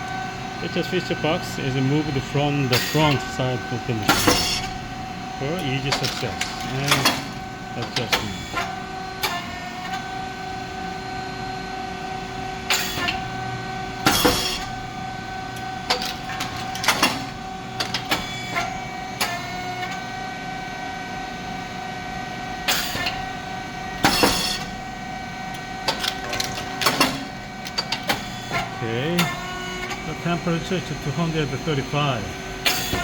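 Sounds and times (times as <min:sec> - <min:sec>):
motor hum: 0:00.0 - 0:33.0
mechanical clacks and knocks: 0:04.0 - 0:04.9, 0:05.6 - 0:09.5, 0:14.0 - 0:14.8, 0:15.6 - 0:20.0, 0:24.0 - 0:24.8, 0:25.8 - 0:30.0.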